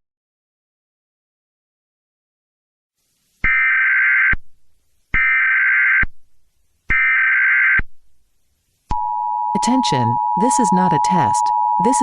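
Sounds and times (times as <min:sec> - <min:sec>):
warbling digital data tones: 0:08.9 - 0:12.0.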